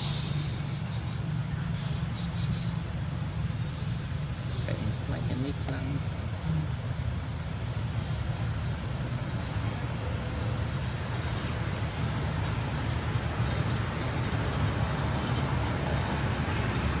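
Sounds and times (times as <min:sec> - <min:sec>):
even hiss: 0:00.0 - 0:09.8.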